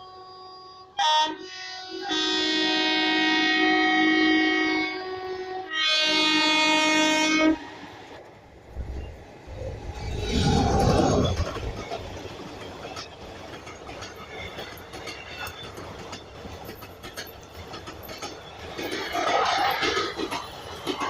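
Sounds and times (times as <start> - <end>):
locomotive air horn blasts: 0.0 - 7.7
train rumble: 4.5 - 21.0.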